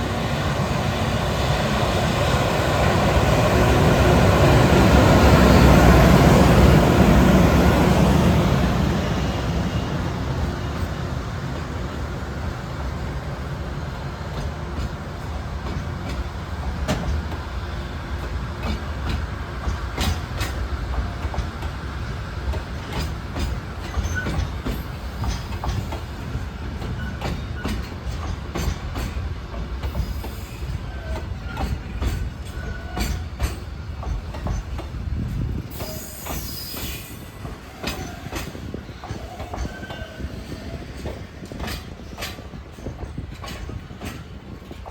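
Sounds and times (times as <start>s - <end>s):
freight train rumbling past: 0.0s - 44.9s
wheels clacking over rail joints: 13.8s - 21.8s, 22.4s - 44.9s.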